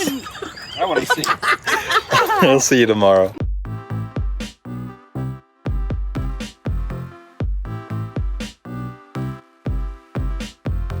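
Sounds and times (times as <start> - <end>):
kick drum beat: 3.4 - 4.8, 5.7 - 8.7, 9.7 - 11.0
sustained synth chords: 3.7 - 11.0.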